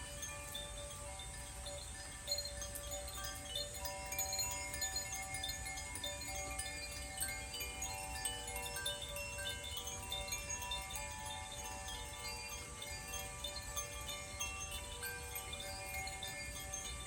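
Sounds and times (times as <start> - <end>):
wind chimes ringing: 0.0 - 17.0.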